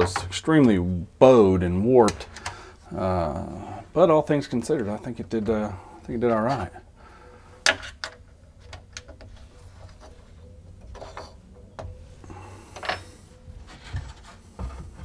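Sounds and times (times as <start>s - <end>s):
scraping rub: 12.8s - 15.0s.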